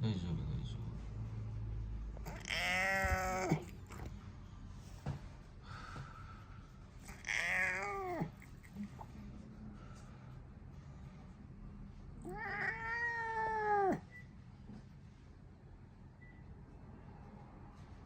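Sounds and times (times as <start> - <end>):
cat meowing: 2.2 - 4.1, 7.0 - 8.6, 12.2 - 14.1.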